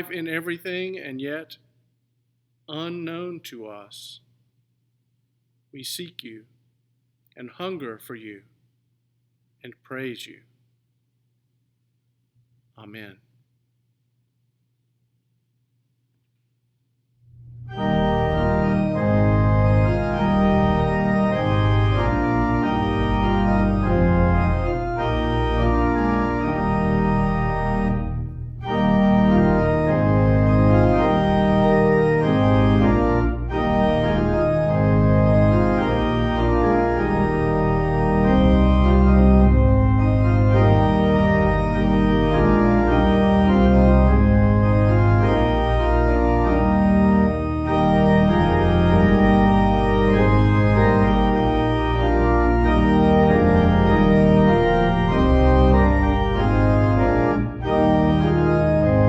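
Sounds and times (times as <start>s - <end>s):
organ playing held chords: 0.0s - 0.9s, 17.4s - 59.0s.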